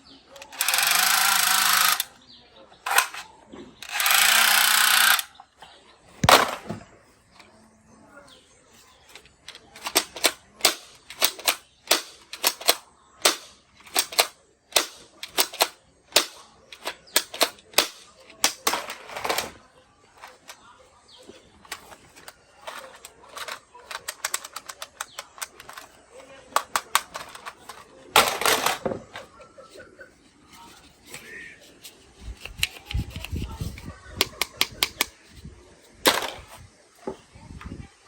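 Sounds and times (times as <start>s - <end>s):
toy gun sharp crack: 0.4s - 2.1s, 2.9s - 5.3s, 9.8s - 18.9s
toy gun clicking: 0.4s - 2.2s, 2.8s - 5.3s, 9.1s - 18.7s, 21.7s - 28.8s, 34.2s - 35.1s
toy gun sound effect: 0.5s - 2.1s, 3.8s - 5.3s.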